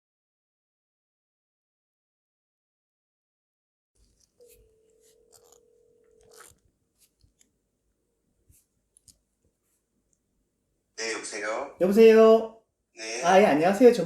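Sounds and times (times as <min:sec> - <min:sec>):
steady phone tone: 0:04.4 - 0:06.6.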